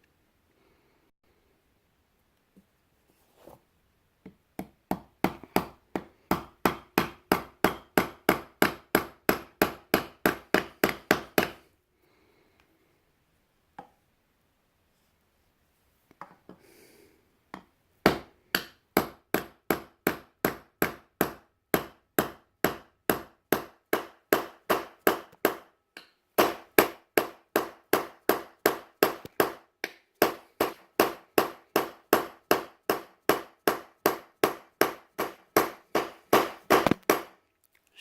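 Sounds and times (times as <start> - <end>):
hammer striking metal wedge: 4.9 - 11.6, 18.1 - 37.3.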